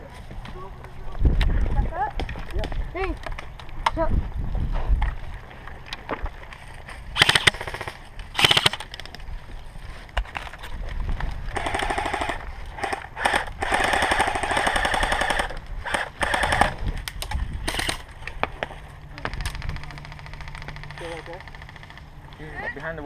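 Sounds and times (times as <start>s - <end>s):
airsoft rifles firing bursts: 7.2s - 8.9s, 11.5s - 16.8s, 17.6s - 18.1s.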